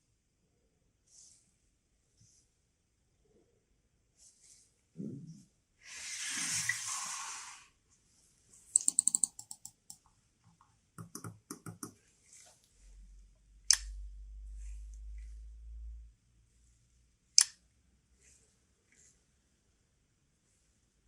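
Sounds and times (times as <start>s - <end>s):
small clicks and taps: 8.8s - 12.0s.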